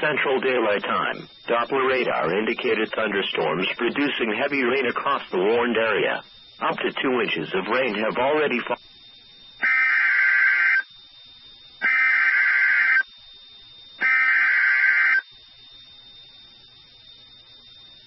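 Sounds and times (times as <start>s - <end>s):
buzzy screeching data bursts: 0.0s - 10.9s, 11.8s - 13.0s, 14.0s - 15.3s
radio hiss and hum: 0.0s - 18.0s.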